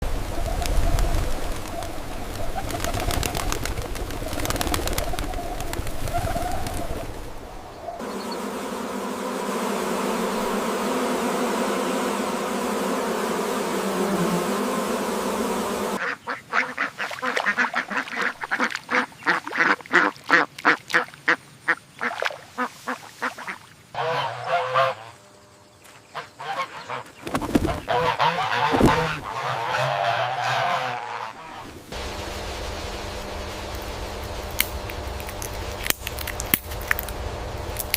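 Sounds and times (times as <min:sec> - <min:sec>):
ducks quacking: 0:16.0 - 0:25.2, 0:26.0 - 0:31.8.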